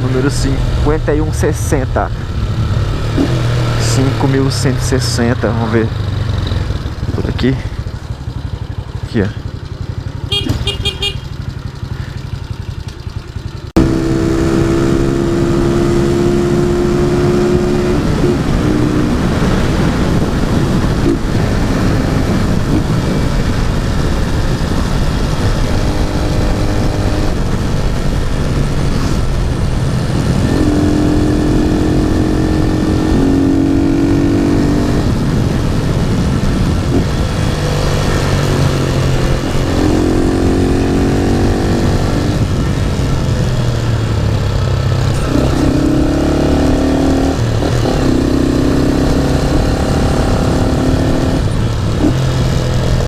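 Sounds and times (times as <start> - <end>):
motorcycle engine revving: 0.0 - 53.0
wind noise on microphone: 13.8 - 44.2, 45.2 - 53.0.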